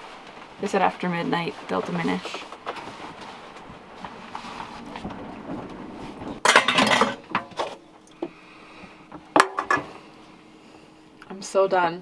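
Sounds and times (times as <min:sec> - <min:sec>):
dishes and glassware clattering: 0:06.4 - 0:07.8, 0:09.4 - 0:10.0
loud crash of dishes: 0:06.4 - 0:07.8, 0:09.4 - 0:10.0.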